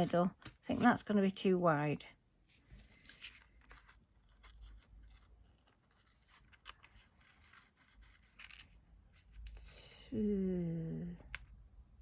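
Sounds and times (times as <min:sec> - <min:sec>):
paper and ribbon rustling: 0:02.4 - 0:09.7.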